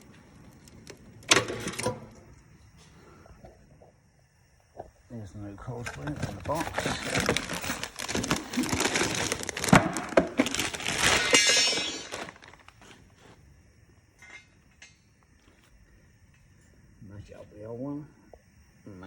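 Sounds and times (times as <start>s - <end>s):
cardboard box being torn open: 6.7s - 11.3s.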